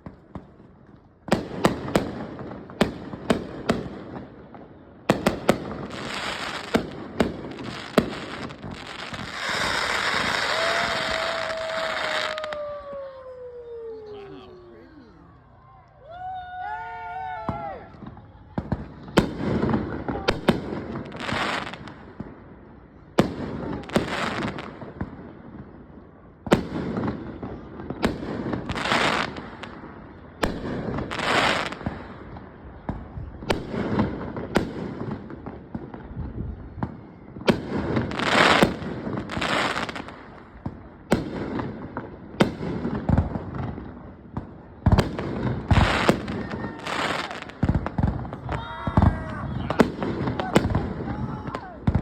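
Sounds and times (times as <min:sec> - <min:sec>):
fireworks bangs: 0:00.0 - 0:14.8, 0:17.1 - 0:22.5, 0:23.1 - 0:52.0.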